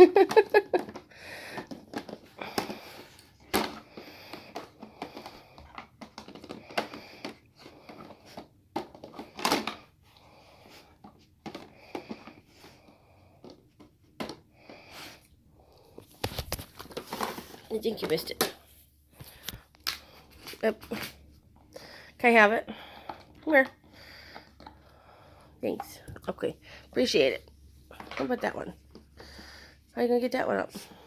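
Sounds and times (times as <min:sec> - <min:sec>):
puzzle box clicks and scrapes: 0:16.0 - 0:18.5.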